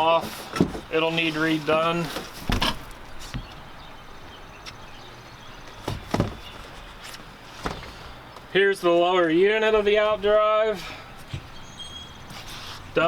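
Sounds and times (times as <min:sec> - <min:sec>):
knocks and clunks: 0:00.0 - 0:03.6, 0:05.7 - 0:06.7, 0:07.6 - 0:08.5
low background noise: 0:00.0 - 0:13.0.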